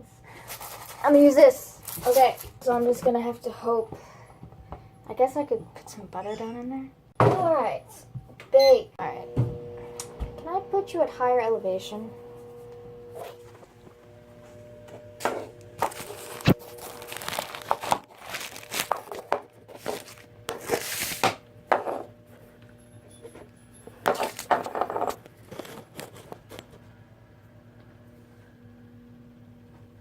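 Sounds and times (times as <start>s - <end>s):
faint steady hum: 0.0s - 30.0s
rustling and crinkling handling: 0.3s - 3.5s, 12.4s - 21.4s, 23.9s - 26.8s.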